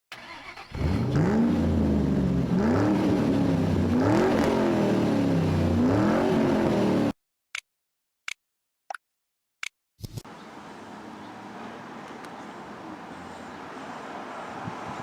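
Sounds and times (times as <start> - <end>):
pickup engine revving: 0.2 - 7.1.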